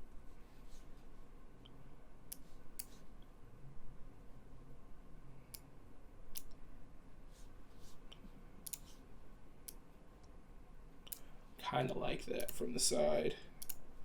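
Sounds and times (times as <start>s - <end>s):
computer mouse clicks: 1.6s - 3.0s, 6.3s - 6.6s, 8.1s - 9.0s, 11.0s - 11.3s, 12.4s - 12.6s, 13.6s - 13.9s.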